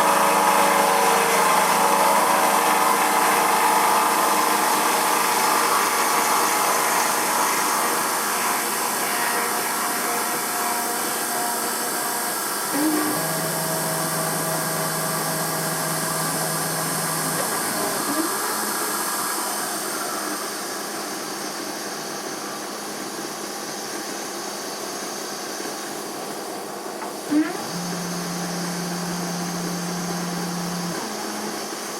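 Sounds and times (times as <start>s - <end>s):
milling machine cutting metal: 0.0s - 20.5s, 27.3s - 31.9s
axis drives humming: 12.6s - 20.4s, 27.0s - 31.9s.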